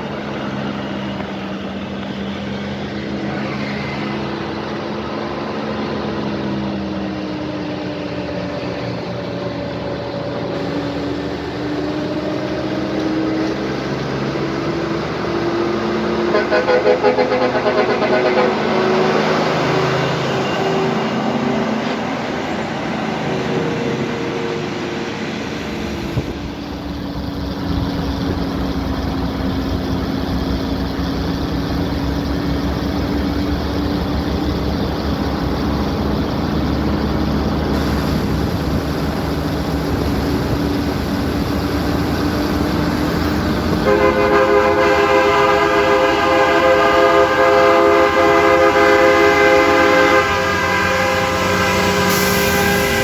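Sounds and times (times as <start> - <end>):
diesel engine running: 0.0 - 53.0
multi-note air horn chord: 16.3 - 19.2, 43.7 - 53.0.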